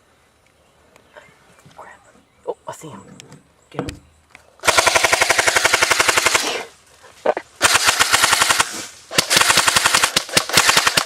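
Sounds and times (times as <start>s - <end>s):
airsoft rifle firing full auto: 4.6s - 6.7s, 7.6s - 11.0s.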